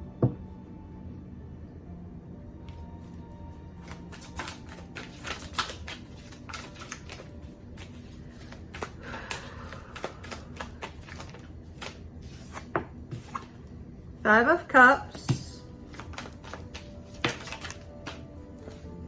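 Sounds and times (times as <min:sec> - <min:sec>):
cards being shuffled: 0:03.8 - 0:13.8, 0:15.1 - 0:19.0.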